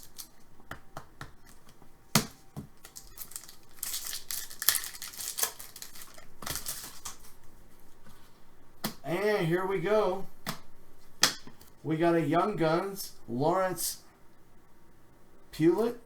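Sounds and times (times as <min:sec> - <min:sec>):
foil wrapper crinkling: 0:00.0 - 0:00.5, 0:01.4 - 0:07.5.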